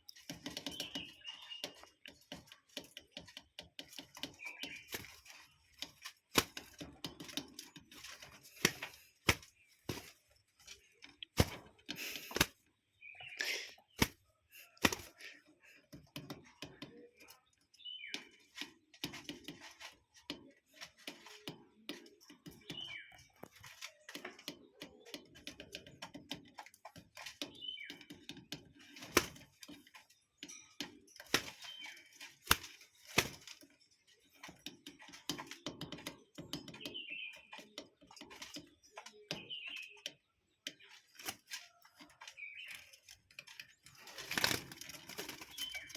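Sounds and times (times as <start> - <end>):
bird chirping: 0.0 - 45.9
sharp clicks and taps: 11.0 - 12.6.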